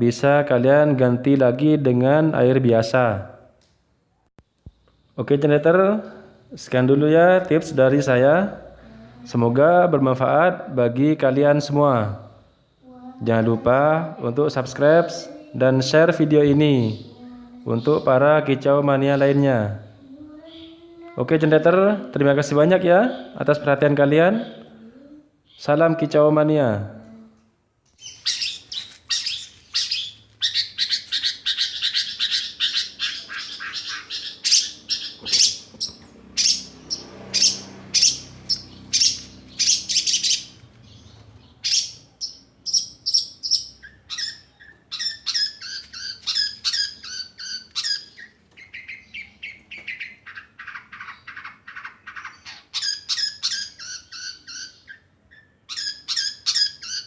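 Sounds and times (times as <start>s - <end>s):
bird harsh chattering song: 14.9s - 18.4s, 19.0s - 21.6s, 22.6s - 26.0s, 27.9s - 57.0s.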